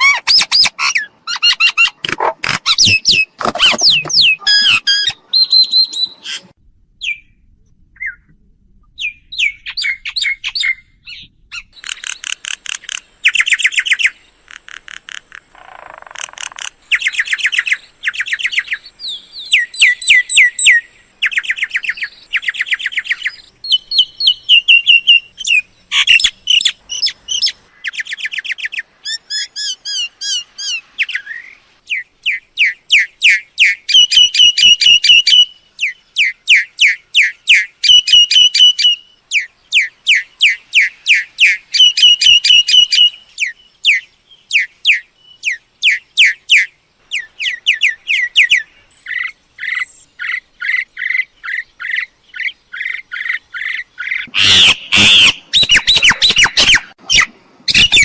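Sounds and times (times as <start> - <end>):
harsh bird squawks: 0.0 - 7.2, 47.4 - 58.0
myna chirps: 0.0 - 7.4, 9.0 - 58.0.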